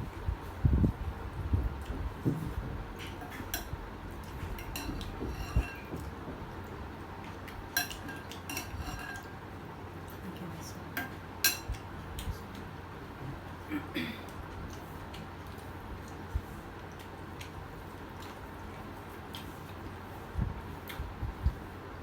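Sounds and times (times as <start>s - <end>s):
cutlery and dishes clinking: 4.3s - 6.1s, 7.7s - 9.4s, 11.0s - 11.8s.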